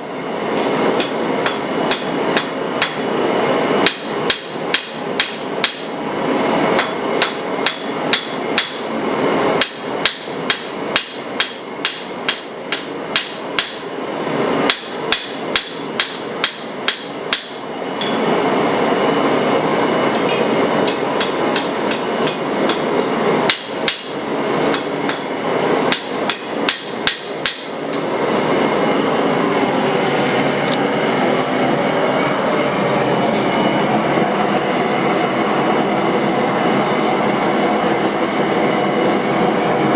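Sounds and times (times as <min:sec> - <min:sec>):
hammer striking steel: 0:00.5 - 0:03.1, 0:03.8 - 0:08.9, 0:09.6 - 0:13.9, 0:14.7 - 0:18.3, 0:20.1 - 0:28.1
steady rushing noise: 0:17.8 - 0:39.9.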